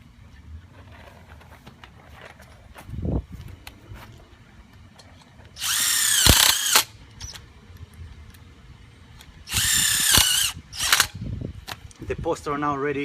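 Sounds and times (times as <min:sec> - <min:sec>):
power drill driving screws: 0:05.6 - 0:06.9, 0:09.5 - 0:11.2.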